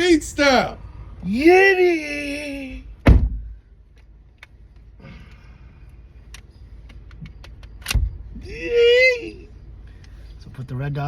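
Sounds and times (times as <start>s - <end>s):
person shouting: 1.2s - 2.9s, 8.4s - 9.5s
loud thump: 3.0s - 3.6s.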